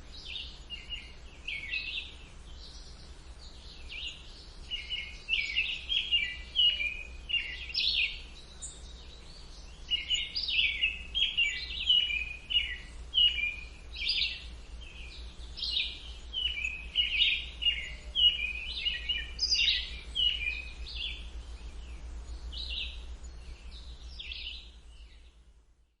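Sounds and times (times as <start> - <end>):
songbirds singing and chirping: 0.0 - 26.0
low background rumble: 19.3 - 25.8.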